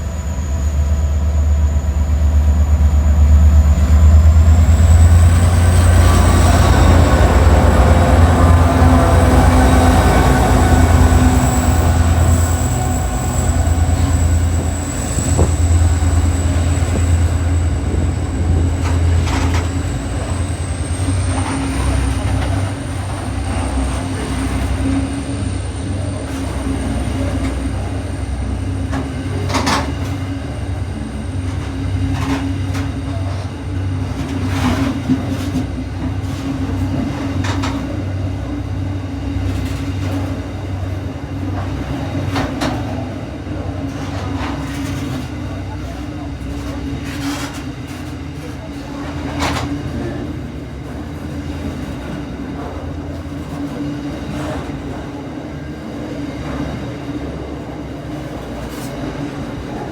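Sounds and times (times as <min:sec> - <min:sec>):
high whine: 0:00.0 - 0:22.2
train running: 0:00.0 - 0:59.9.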